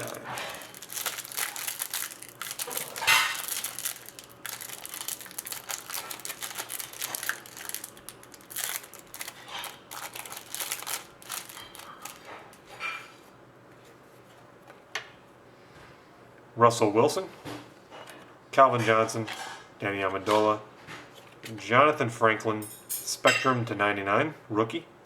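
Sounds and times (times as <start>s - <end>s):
plastic wrapping crinkling: 0.0s - 13.0s.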